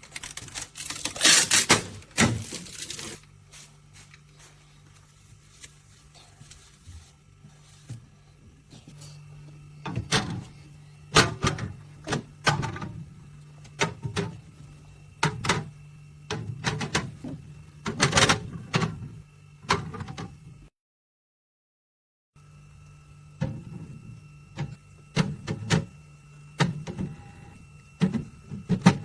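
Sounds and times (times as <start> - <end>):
steady low hum: 0.0 - 20.7, 22.4 - 29.0.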